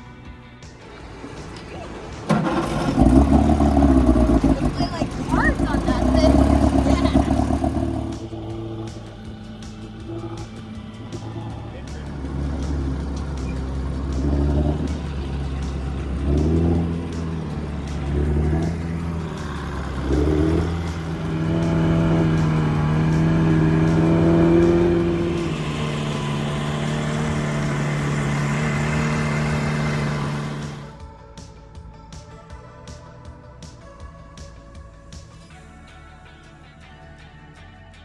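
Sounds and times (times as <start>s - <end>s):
engine revving: 0.8s - 31.0s.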